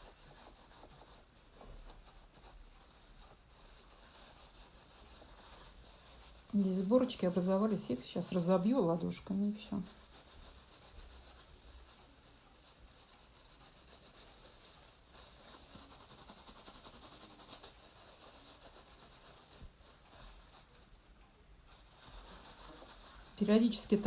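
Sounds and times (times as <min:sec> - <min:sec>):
palms rubbing wet wool: 0:00.0 - 0:24.0.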